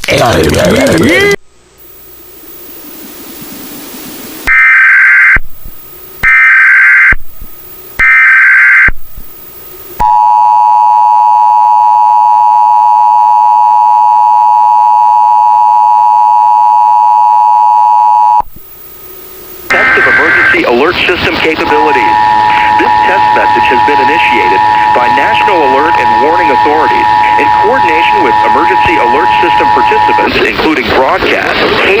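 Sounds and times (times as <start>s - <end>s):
digital data tone bursts: 4.4s - 9.2s, 18.1s - 32.0s
two-tone alert signal: 21.5s - 30.4s.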